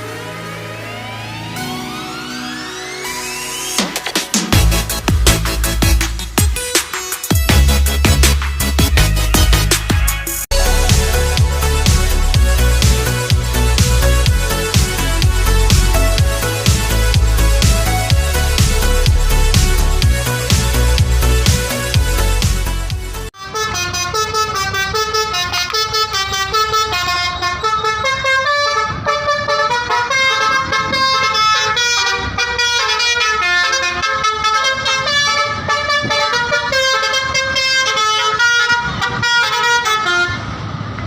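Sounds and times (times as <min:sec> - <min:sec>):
multi-tone air horn playing a tune: 0:23.4 - 0:40.4.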